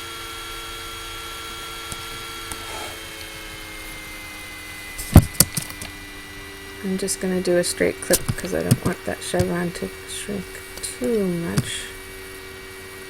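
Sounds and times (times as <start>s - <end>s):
laptop cooling fan whine: 0.0s - 13.0s
sharp clicks: 5.0s - 6.0s, 8.0s - 12.0s.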